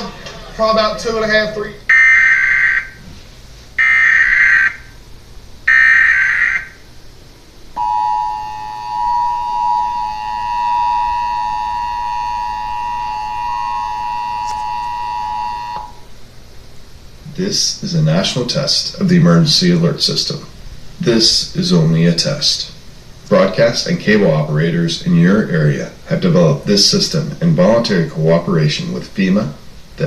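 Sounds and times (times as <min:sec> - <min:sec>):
digital data bursts: 0:05.7 - 0:06.8
two-tone alert signal: 0:07.8 - 0:16.0.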